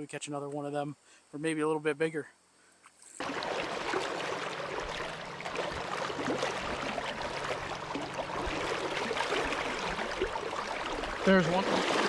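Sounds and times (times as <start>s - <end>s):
stream water rushing: 3.2s - 12.0s.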